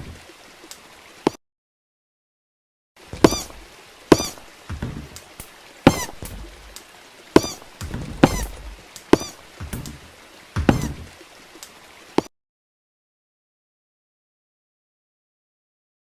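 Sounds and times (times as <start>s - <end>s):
soft thuds: 3.1s - 6.8s, 7.4s - 11.1s
heavy footsteps with ringing: 3.2s - 5.2s, 7.4s - 10.0s.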